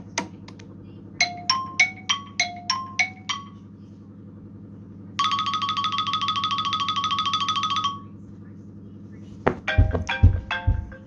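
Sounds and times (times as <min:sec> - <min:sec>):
faint steady hum: 0:00.0 - 0:11.0
bell-like phone ringtone: 0:05.2 - 0:08.0.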